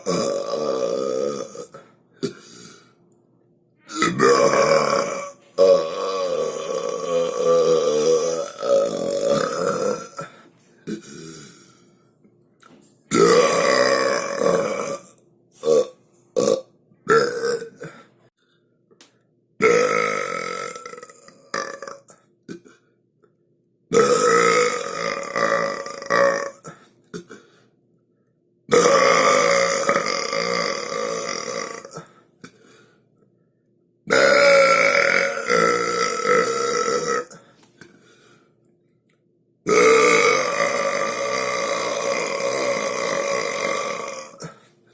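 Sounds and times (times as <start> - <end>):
long loud burps: 0.0 - 2.9, 3.9 - 11.8, 13.1 - 18.1, 19.6 - 22.9, 23.9 - 27.6, 28.7 - 32.7, 34.1 - 37.6, 39.6 - 44.7.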